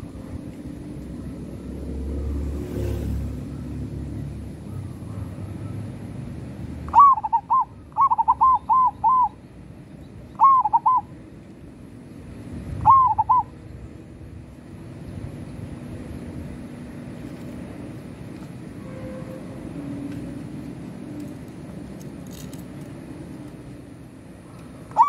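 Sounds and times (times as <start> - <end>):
dove cooing: 6.9 - 9.4, 10.4 - 11.1, 12.8 - 13.5, 24.8 - 25.0.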